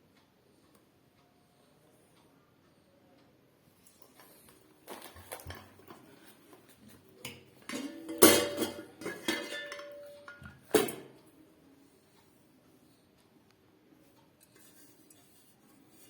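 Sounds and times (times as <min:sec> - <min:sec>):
metal parts knocking and clinking: 0:07.6 - 0:11.1
metallic ring: 0:07.6 - 0:11.1.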